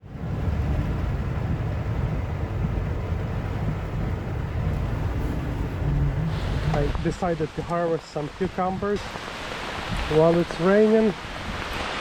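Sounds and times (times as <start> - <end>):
low rumble: 0.0 - 7.6
steady rain falling: 0.0 - 12.0.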